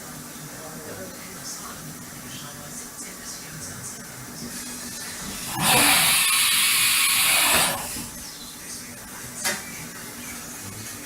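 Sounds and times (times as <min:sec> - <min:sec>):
compressed air hissing: 0:05.4 - 0:08.1.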